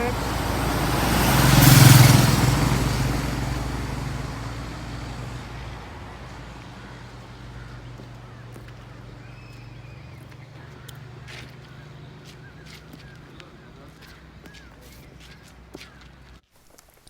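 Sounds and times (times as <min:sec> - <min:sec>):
vehicle passing by: 0:00.0 - 0:16.4.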